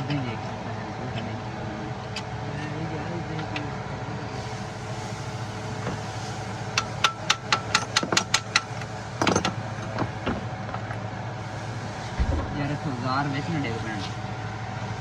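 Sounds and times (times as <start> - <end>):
steady low hum: 3.9 - 15.0.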